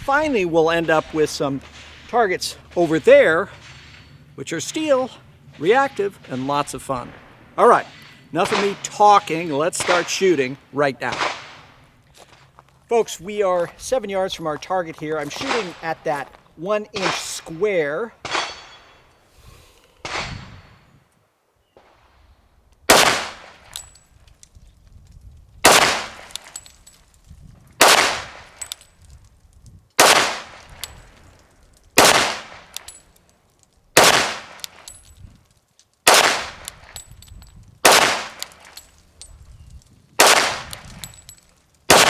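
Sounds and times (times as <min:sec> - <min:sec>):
pistol shots with echo: 0:07.9 - 0:09.0, 0:09.7 - 0:10.3, 0:15.3 - 0:16.0, 0:22.9 - 0:23.6, 0:25.7 - 0:26.3, 0:27.8 - 0:28.5, 0:30.0 - 0:30.6, 0:32.0 - 0:32.8, 0:34.0 - 0:34.8, 0:36.1 - 0:36.7, 0:37.8 - 0:38.6, 0:40.2 - 0:40.8.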